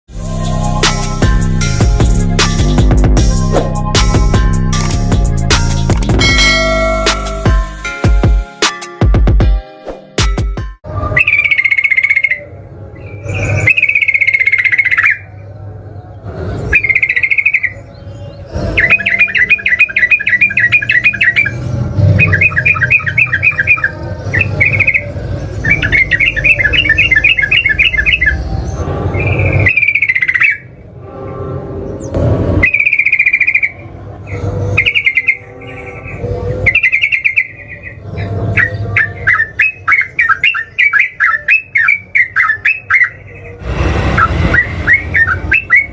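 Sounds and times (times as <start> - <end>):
bulbul singing with trills: 16.7 - 30.7, 32.0 - 43.5.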